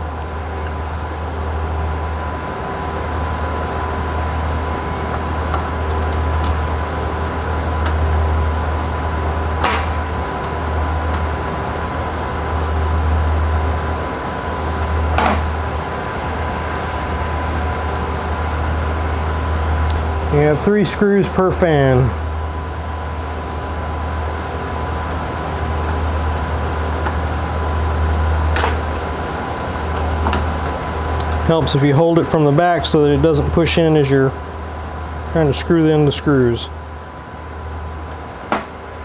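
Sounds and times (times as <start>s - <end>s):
equipment and cooling fans drone: 0.0s - 39.0s
steady whine: 0.0s - 39.0s.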